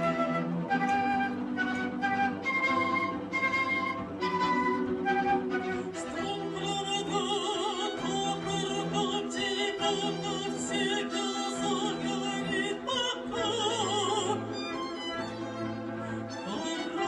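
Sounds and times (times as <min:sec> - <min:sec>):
cello low held notes: 0:00.0 - 0:17.0
flute: 0:00.0 - 0:17.0
viola: 0:00.0 - 0:17.0
violin: 0:00.0 - 0:17.0
operatic woman singing: 0:06.0 - 0:14.7, 0:16.3 - 0:17.0.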